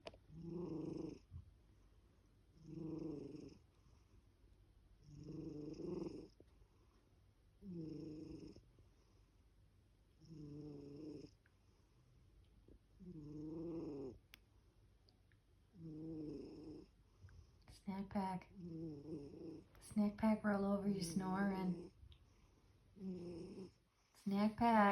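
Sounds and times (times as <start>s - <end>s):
pet snoring: 0.3s - 1.4s, 2.5s - 4.0s, 5.0s - 6.4s, 7.6s - 9.1s, 10.2s - 11.4s, 13.0s - 14.2s, 15.7s - 17.0s, 18.5s - 19.9s, 23.0s - 23.8s.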